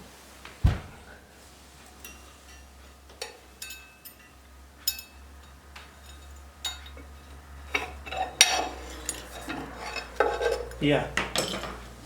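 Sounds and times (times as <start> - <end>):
tools clinking on metal: 3.2 - 5.2, 5.8 - 11.8.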